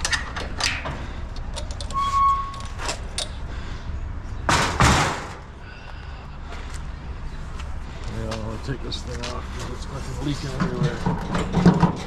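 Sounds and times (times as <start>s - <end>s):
short squeak: 1.9s - 2.9s
steady low rumble: 2.6s - 10.5s
scrap metal clanks and knocks: 9.6s - 12.0s.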